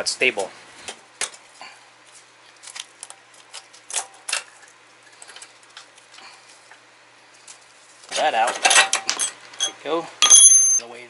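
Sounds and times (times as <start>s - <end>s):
hand tools clicking and clinking: 8.5s - 10.8s.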